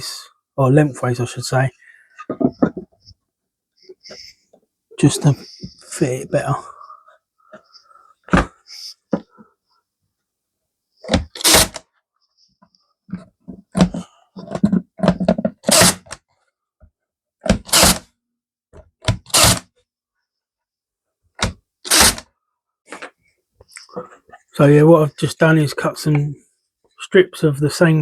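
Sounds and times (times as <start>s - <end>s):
wooden boards knocking and scraping: 2.3s - 3.0s.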